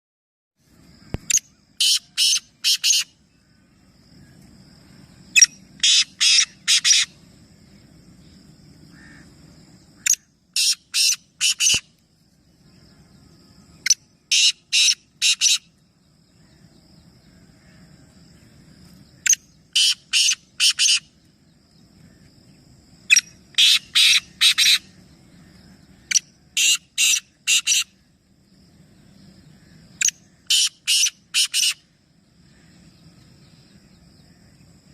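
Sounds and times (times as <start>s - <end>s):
bird giving harsh calls: 1.2s - 3.2s, 5.4s - 7.2s, 10.0s - 11.9s, 13.8s - 15.7s, 19.2s - 21.1s, 23.1s - 24.9s, 26.0s - 28.0s, 30.0s - 31.8s.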